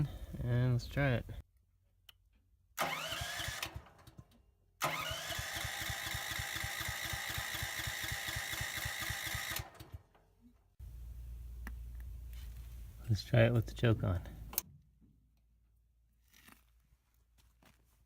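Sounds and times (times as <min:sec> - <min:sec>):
electric starter cranking engine: 0:02.8 - 0:10.2.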